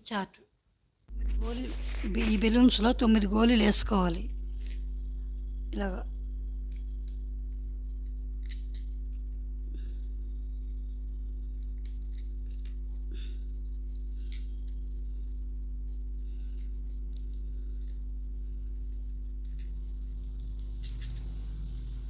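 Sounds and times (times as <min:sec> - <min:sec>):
low electrical hum: 0:00.0 - 0:22.0
glass marbles clicking: 0:20.5 - 0:21.3.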